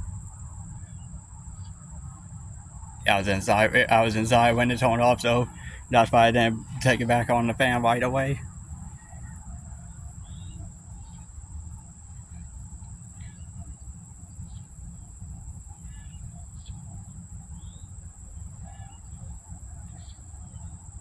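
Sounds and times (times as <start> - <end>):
birds chirping: 2.8 - 8.4
high-pitched insect drone: 3.1 - 9.0.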